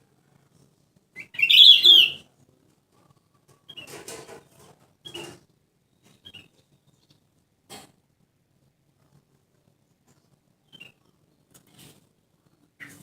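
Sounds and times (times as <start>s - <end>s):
bulbul chattering: 1.4s - 2.2s.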